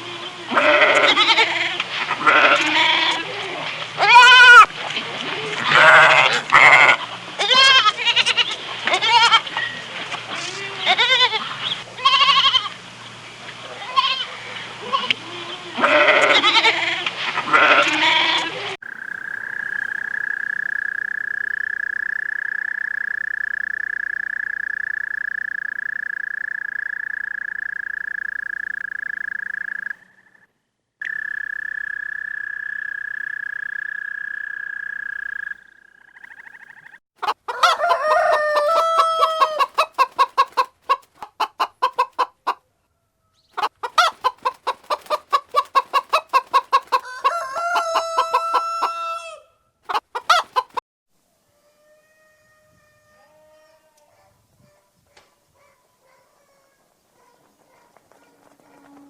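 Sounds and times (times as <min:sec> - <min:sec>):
chickens clucking: 0:37.2 - 0:42.6, 0:43.6 - 0:50.8.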